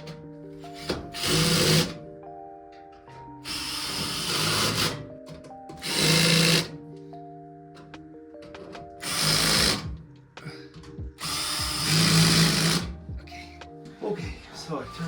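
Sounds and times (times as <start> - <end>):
background music: 0.0 - 15.0
power drill driving screws into metal: 0.8 - 2.0, 3.4 - 5.1, 5.7 - 6.7, 9.0 - 9.9, 11.2 - 13.0.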